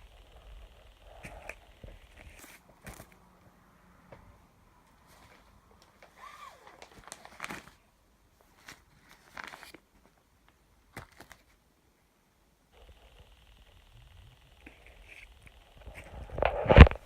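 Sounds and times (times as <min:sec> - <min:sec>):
rustles and crinkles: 0:00.0 - 0:03.4, 0:04.0 - 0:11.6, 0:14.5 - 0:17.0.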